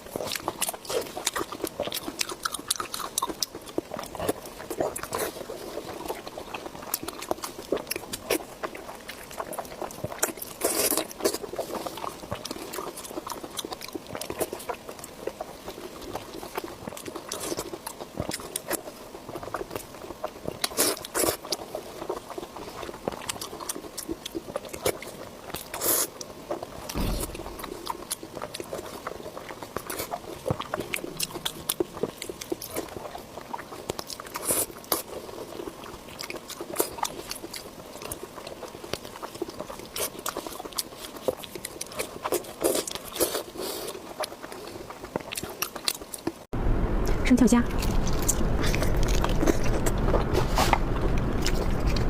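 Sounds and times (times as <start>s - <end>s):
wet chewing and biting: 0.0s - 46.5s, 47.7s - 52.0s
low thump: 27.0s - 28.2s.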